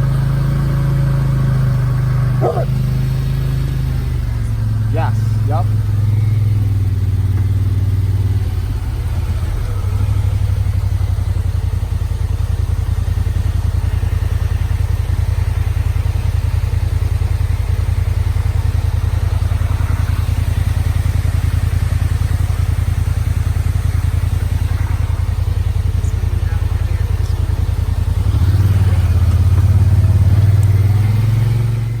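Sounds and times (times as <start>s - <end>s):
off-road vehicle engine: 0.0s - 32.0s.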